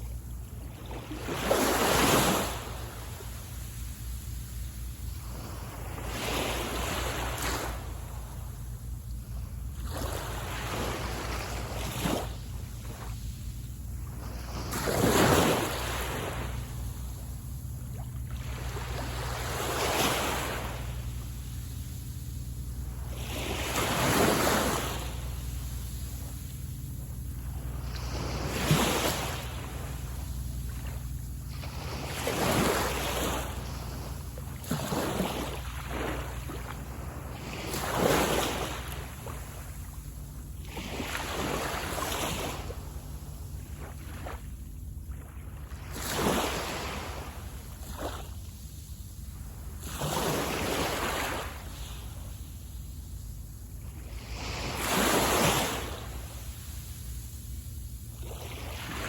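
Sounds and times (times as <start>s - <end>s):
steady low rumble: 0.0s - 59.0s
waves breaking on beach: 0.0s - 59.0s.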